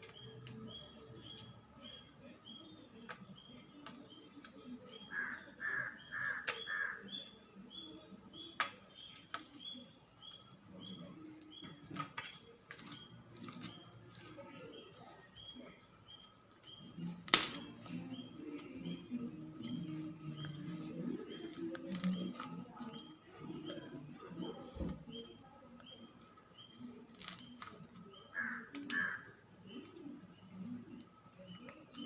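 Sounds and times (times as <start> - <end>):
bird chirping: 0.0 - 32.0.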